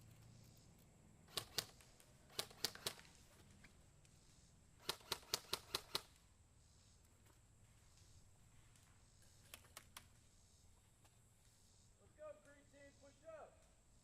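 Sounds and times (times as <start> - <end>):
airsoft gun shots: 1.3 - 3.0, 4.8 - 6.1.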